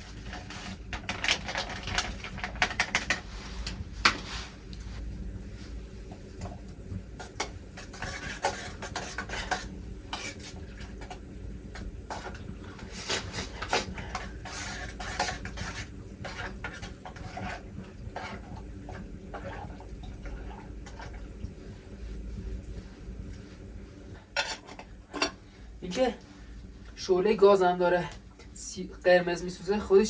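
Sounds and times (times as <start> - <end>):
metal spoon scraping a pot: 7.2 - 10.6, 13.1 - 18.6.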